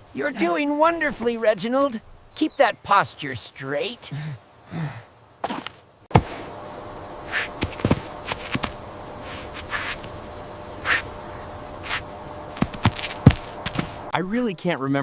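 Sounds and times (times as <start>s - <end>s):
low background hum: 6.1s - 14.8s.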